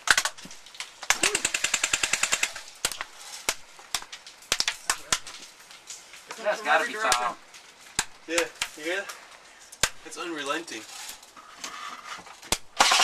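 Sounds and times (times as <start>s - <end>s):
airsoft guns firing: 1.0s - 3.6s, 12.5s - 13.0s.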